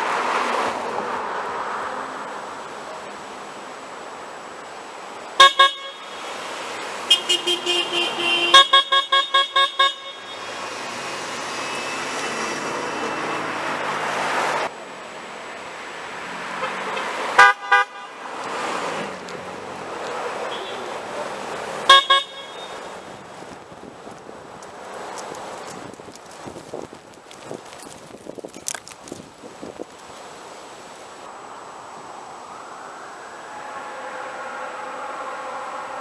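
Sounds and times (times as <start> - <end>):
steady traffic noise: 0.0 - 36.0
car horns honking: 5.4 - 13.6, 16.5 - 18.6, 20.4 - 21.1, 21.8 - 23.2.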